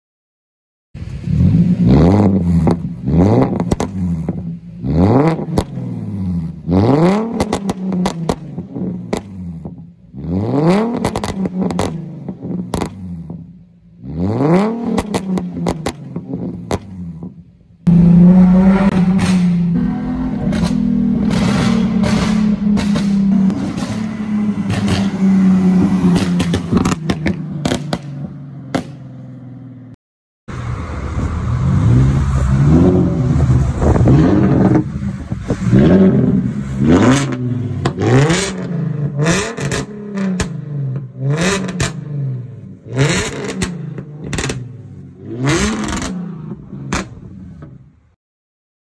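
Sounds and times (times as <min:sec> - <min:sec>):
car engine revving: 0:01.0 - 0:29.9, 0:30.5 - 0:47.7
exhaust pops and crackles: 0:02.6 - 0:04.5, 0:07.3 - 0:09.8, 0:12.7 - 0:13.4, 0:14.9 - 0:17.4, 0:26.1 - 0:29.0, 0:39.3 - 0:42.0, 0:43.2 - 0:44.6, 0:46.9 - 0:47.8.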